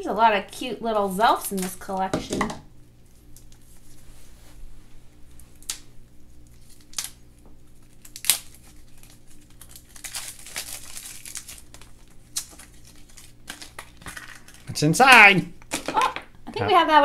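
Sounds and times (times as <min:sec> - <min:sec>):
plastic packaging crinkling and tearing: 0:05.4 - 0:16.2.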